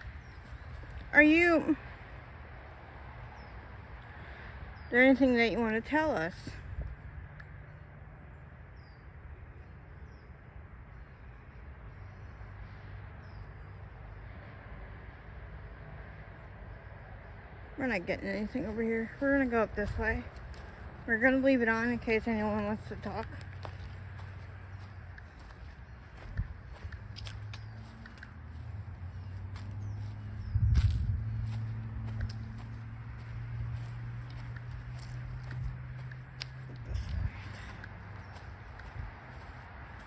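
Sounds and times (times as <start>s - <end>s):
footsteps of person walking: 18.6s - 40.0s.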